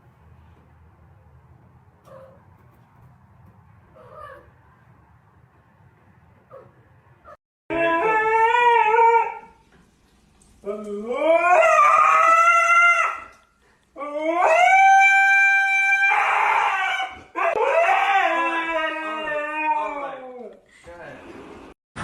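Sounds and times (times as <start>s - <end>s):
dog howling: 7.3s - 9.5s, 10.6s - 13.4s, 14.0s - 20.6s.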